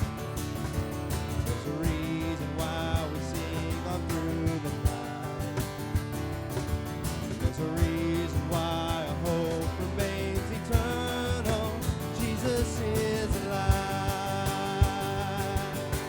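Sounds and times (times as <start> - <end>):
worship band playing: 7.1 - 16.0.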